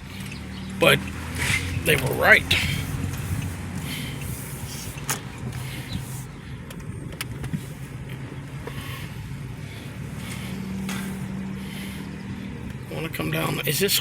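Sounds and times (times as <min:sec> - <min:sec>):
car engine and road hum: 0:00.0 - 0:14.0
light clicks in car cabin: 0:06.6 - 0:08.8.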